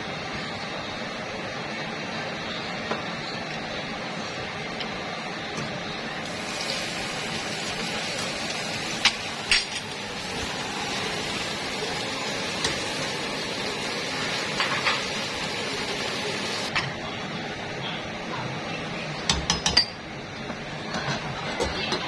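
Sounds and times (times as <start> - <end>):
utensils clinking against dishes: 9.0 - 10.0.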